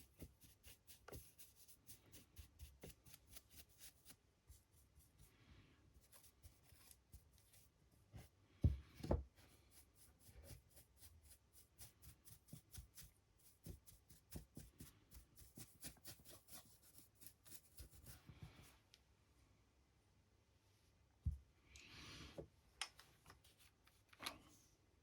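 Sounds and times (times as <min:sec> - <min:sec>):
paintbrush scratching and tapping: 0:00.0 - 0:05.1, 0:06.0 - 0:18.6.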